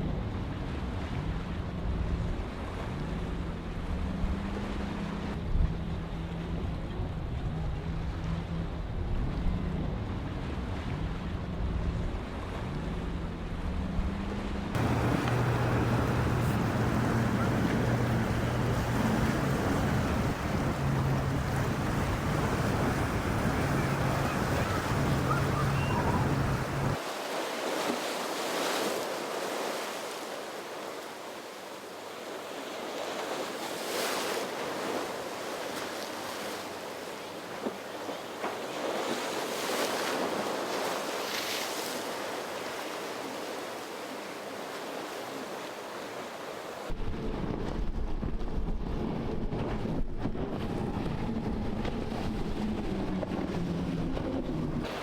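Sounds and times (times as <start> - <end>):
waves and surf rushing: 0.0 - 55.0
boat engine humming: 0.1 - 27.0, 48.8 - 55.0
wind buffeting microphone: 14.8 - 27.0, 46.9 - 55.0.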